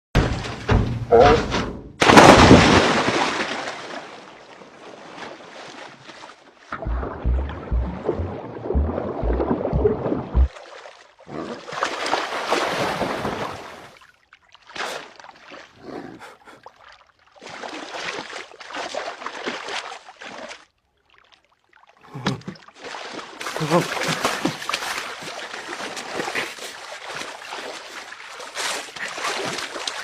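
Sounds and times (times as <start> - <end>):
water sloshing and splashing: 0.2 - 30.0
heavy low thumps: 6.8 - 10.5.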